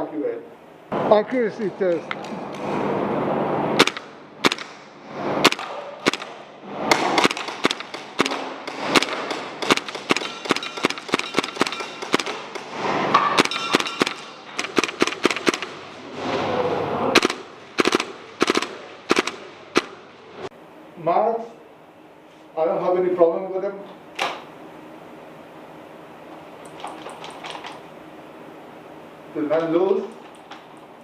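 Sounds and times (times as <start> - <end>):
airsoft rifle shots: 3.8 - 15.8, 17.1 - 20.0.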